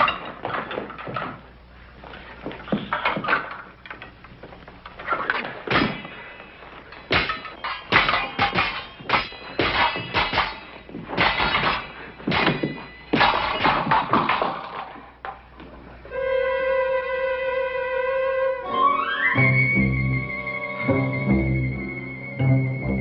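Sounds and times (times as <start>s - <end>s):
fencing blades clashing: 5.2s - 15.3s.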